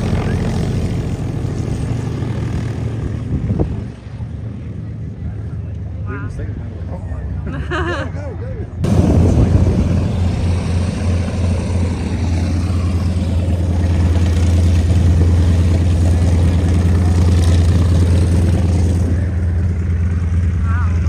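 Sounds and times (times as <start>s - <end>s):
propeller plane engine drone: 0.0s - 7.4s, 8.8s - 21.0s.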